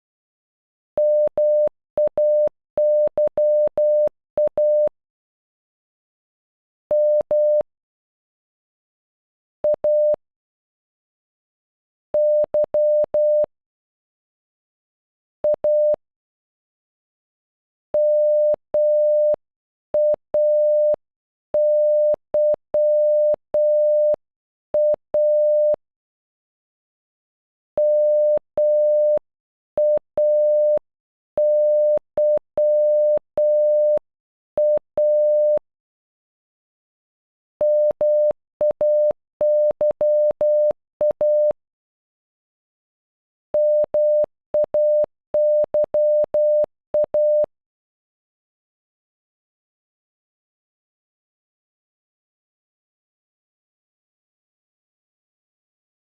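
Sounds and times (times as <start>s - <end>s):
morse code beeps: 1.0s - 4.9s, 12.2s - 13.5s, 18.0s - 19.4s, 20.0s - 21.0s, 21.6s - 24.2s, 24.8s - 25.8s, 27.8s - 29.2s, 29.8s - 30.8s, 31.4s - 34.0s, 34.6s - 35.6s, 37.6s - 41.6s, 43.6s - 47.5s.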